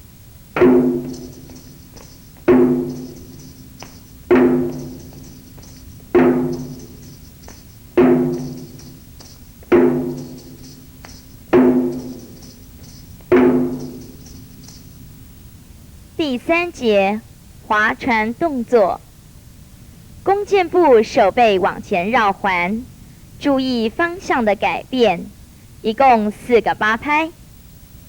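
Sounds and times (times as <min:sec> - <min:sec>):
drum strikes with pitched ring: 0:00.6 - 0:15.1.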